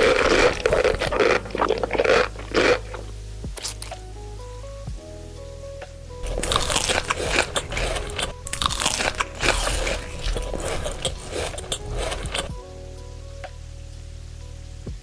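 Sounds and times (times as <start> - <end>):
crunching and chewing: 0.0 - 3.9, 6.2 - 12.6
background music: 0.0 - 15.0.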